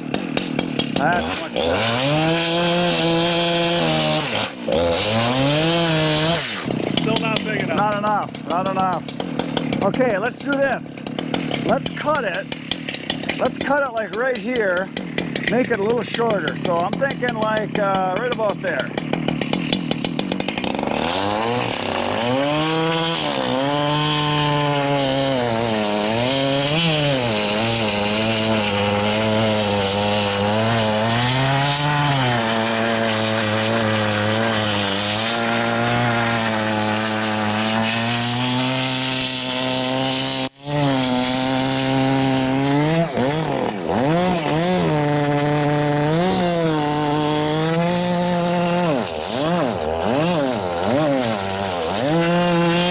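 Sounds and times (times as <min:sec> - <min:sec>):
chainsaw cutting log: 0:00.0 - 0:52.9.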